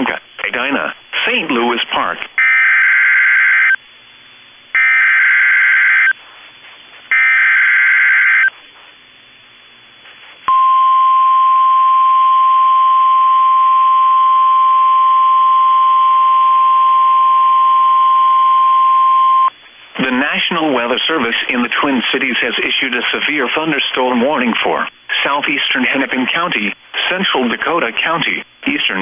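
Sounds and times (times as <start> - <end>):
steady warning alarm tone: 2.4 - 3.8, 4.7 - 6.2, 7.1 - 8.6.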